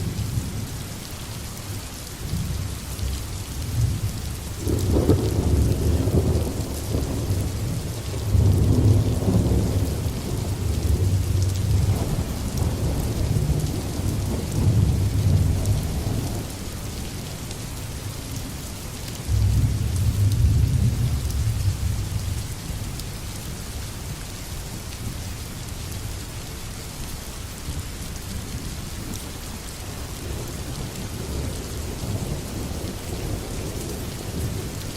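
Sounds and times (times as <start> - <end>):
steady rain: 0.0 - 34.9.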